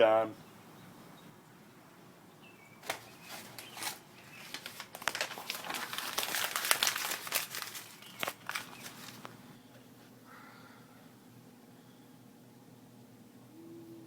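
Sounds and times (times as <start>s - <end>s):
paper crinkling and rustling: 2.8s - 9.5s.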